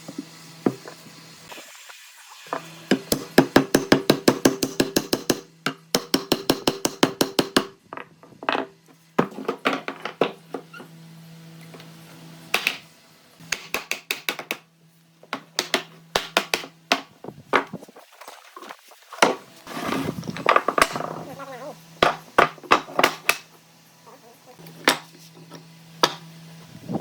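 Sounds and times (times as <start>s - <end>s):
hand tools knocking on wood: 2.9s - 10.7s, 13.5s - 14.6s, 15.3s - 17.8s, 22.0s - 23.4s.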